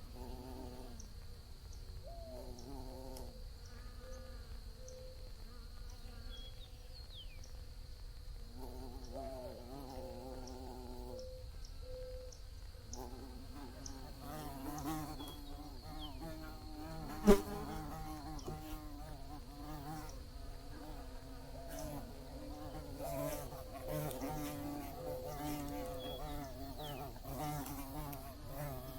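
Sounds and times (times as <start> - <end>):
bees buzzing: 12.9 - 28.9.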